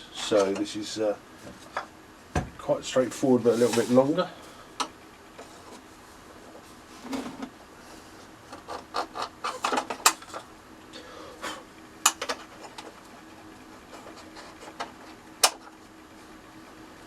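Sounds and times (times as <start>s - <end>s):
faint steady hum: 0.0s - 17.0s
wood and tools clicking and tapping: 12.0s - 13.2s.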